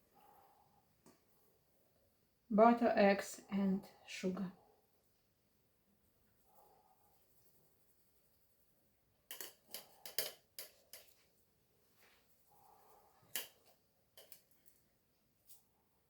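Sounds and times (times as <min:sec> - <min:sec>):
sieve and utensils tapping: 0:09.3 - 0:11.2, 0:13.3 - 0:14.6.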